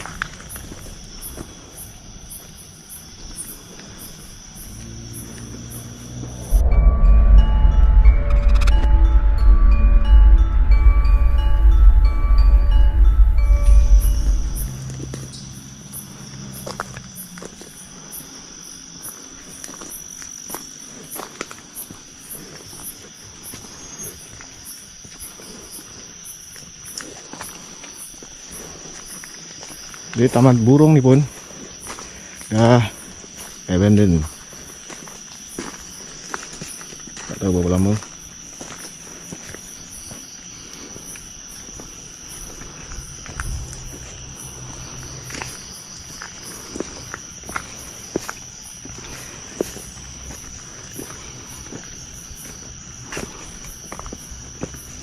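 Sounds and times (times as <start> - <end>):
crickets chirring: 0.0 - 55.0
insects droning: 0.0 - 55.0
low hum: 6.2 - 16.8.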